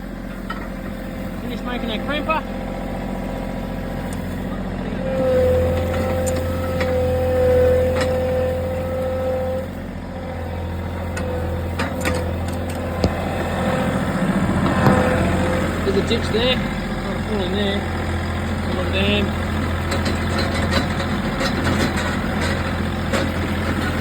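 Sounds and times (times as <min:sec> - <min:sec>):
vehicle engine running: 0:00.0 - 0:24.0
strong steady whine: 0:10.8 - 0:18.0
sharp knocks: 0:14.6 - 0:15.8.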